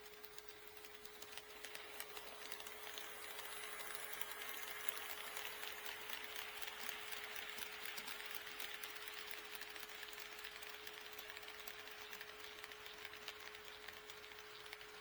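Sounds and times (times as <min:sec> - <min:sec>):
model train motor whirring: 0:00.0 - 0:15.0
wheels clicking on rails: 0:00.0 - 0:15.0.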